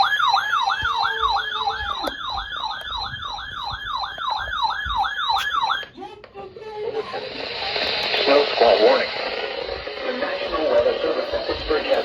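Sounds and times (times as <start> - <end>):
electronic yelp siren: 0.0 - 5.9.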